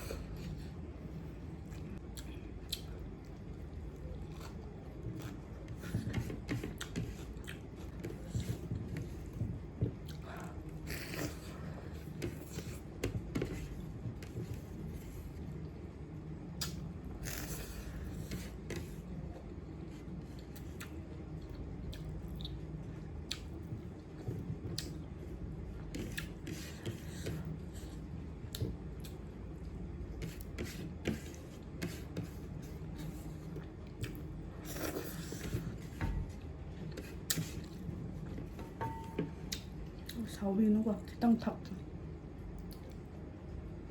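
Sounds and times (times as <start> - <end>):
steady low hum: 0.0 - 43.9
person chewing: 1.6 - 6.0, 6.6 - 8.6, 20.4 - 22.6, 23.2 - 23.8, 24.8 - 25.0, 32.9 - 35.8.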